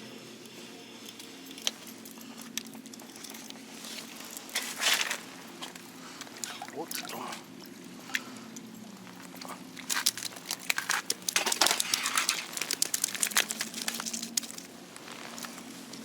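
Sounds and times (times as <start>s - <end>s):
tent fabric flapping in wind: 8.6s - 16.0s.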